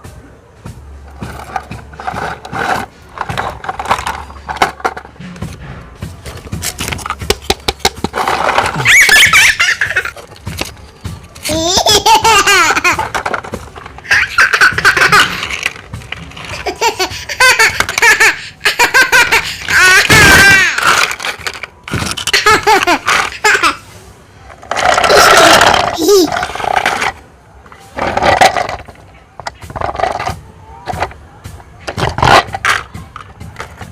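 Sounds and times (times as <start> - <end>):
child laughing: 8.5 - 10.4, 11.4 - 13.2, 14.0 - 15.7, 16.4 - 21.0, 22.2 - 23.8, 25.0 - 26.6.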